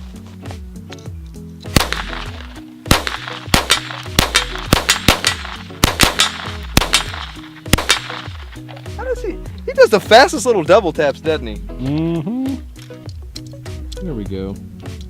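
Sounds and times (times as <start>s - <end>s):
background music: 0.0s - 15.0s
pistol firing rapid shots: 1.8s - 8.3s.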